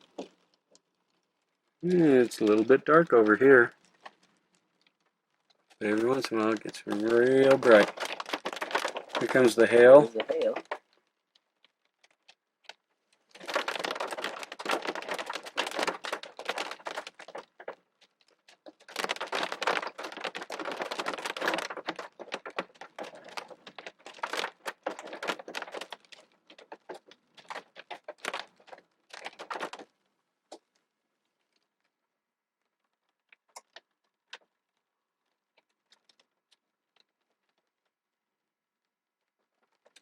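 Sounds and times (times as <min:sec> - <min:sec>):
hail hitting a car: 0:01.8 - 0:04.2, 0:05.8 - 0:10.8, 0:13.4 - 0:17.8, 0:18.6 - 0:29.8.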